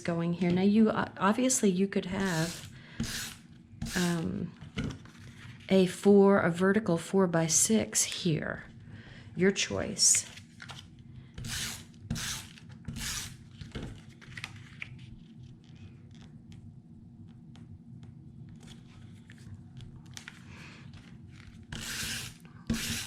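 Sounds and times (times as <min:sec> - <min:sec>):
paper rustling: 0:13.6 - 0:16.3.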